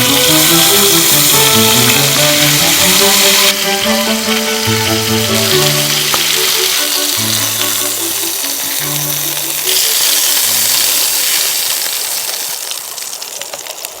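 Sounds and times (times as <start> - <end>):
background music with bass line: 0.0 - 9.6
meat sizzling: 0.0 - 14.0.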